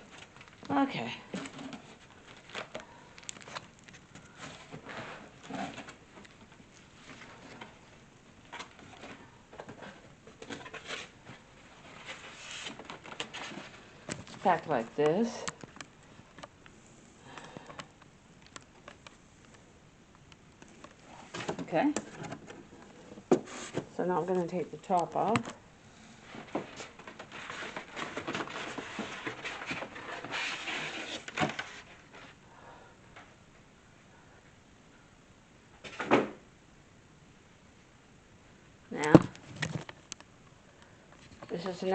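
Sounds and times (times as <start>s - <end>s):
packaging rustling and scraping: 1.3s - 16.4s, 20.7s - 24.0s, 26.1s - 32.4s
cardboard box rustling and scraping: 9.8s - 14.7s, 23.2s - 24.0s, 26.2s - 32.2s.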